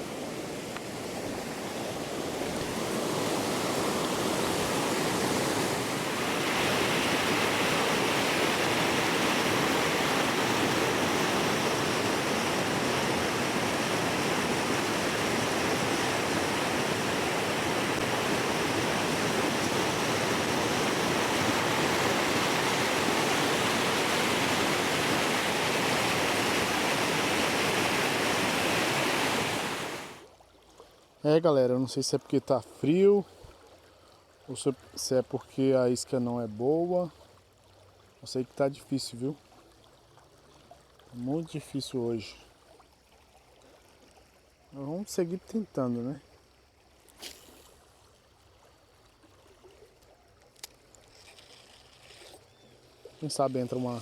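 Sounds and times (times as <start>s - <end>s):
waterfall rushing: 2.6s - 30.2s.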